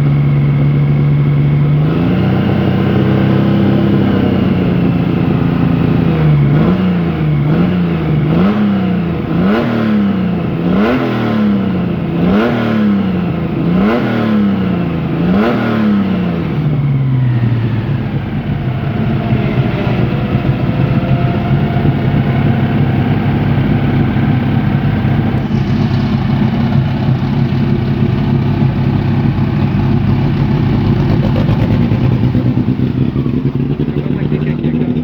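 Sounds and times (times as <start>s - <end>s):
car engine idling after a rev: 16.0s - 35.0s.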